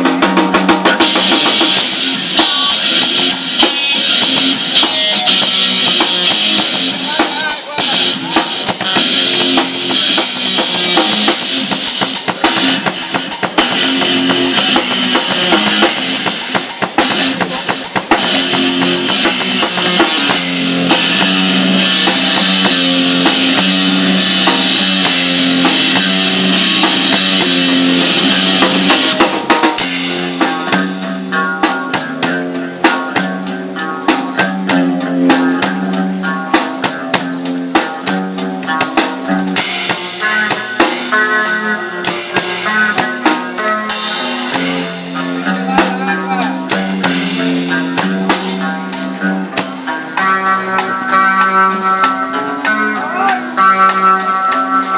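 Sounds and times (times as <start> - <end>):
drum hits: 0.0 - 33.5, 44.2 - 51.2
rock music on drums and guitar: 0.0 - 54.9.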